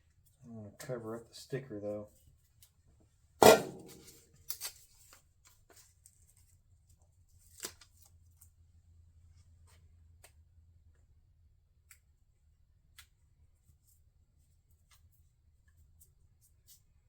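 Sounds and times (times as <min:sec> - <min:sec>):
tape clicks and rustles: 0:03.5 - 0:06.6, 0:07.3 - 0:08.5.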